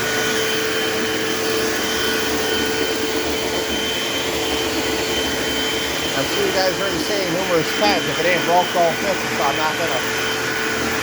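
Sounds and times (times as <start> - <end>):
vacuum cleaner running: 0.0 - 11.0.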